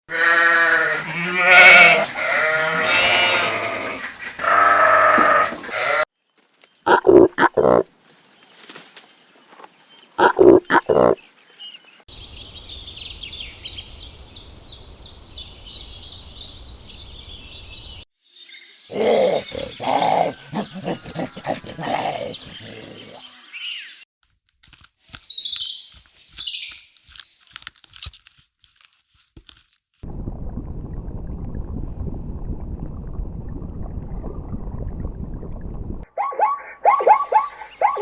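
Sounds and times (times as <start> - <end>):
high animal chirps: 18.9 - 23.2, 25.1 - 27.5
wavering animal call: 18.9 - 23.2.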